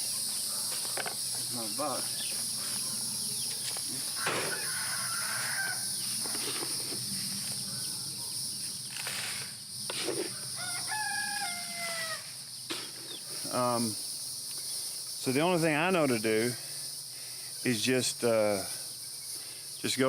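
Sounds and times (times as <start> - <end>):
rooster crowing: 2.8 - 6.3, 10.3 - 12.3.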